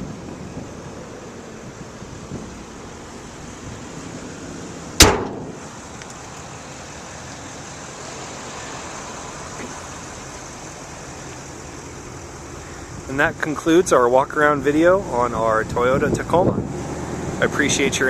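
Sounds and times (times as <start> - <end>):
outdoor background noise: 0.0 - 18.0
truck hood slamming shut: 5.0 - 5.8.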